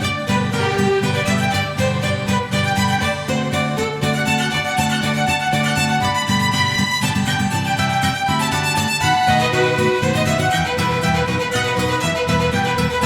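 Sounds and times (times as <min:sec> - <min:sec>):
background music with bowed strings: 0:00.0 - 0:13.0.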